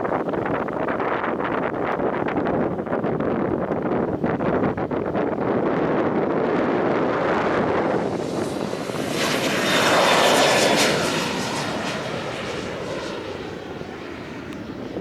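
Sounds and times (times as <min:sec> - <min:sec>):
airliner engines passing by: 0:03.6 - 0:15.0.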